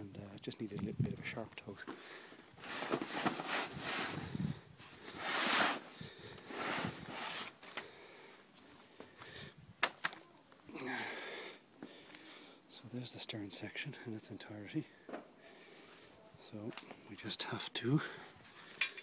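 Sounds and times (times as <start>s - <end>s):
kayak frame scraping against hull skin: 2.6s - 4.4s, 5.0s - 7.6s.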